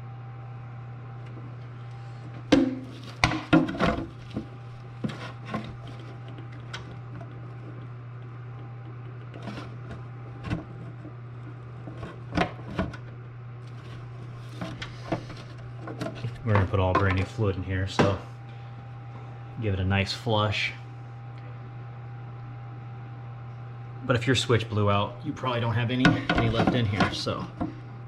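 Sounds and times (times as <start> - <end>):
steady low hum: 0.0 - 28.0
knocks and clatters of tools: 2.5 - 7.3, 26.0 - 27.8.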